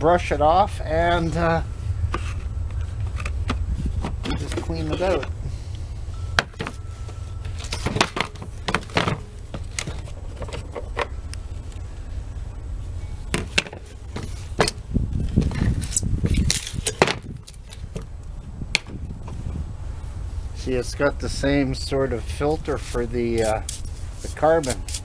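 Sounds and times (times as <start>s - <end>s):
wind rumble on microphone: 0.0s - 25.0s
plastic parts clicking and rattling: 7.5s - 11.2s, 13.3s - 18.1s.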